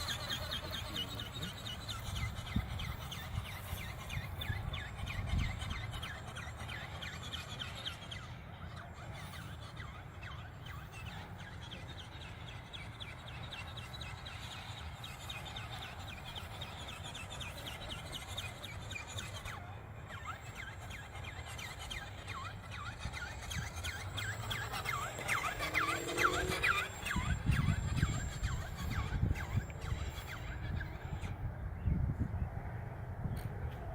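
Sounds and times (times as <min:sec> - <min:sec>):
wind rumbling on microphone: 0:00.0 - 0:06.7, 0:20.4 - 0:33.9.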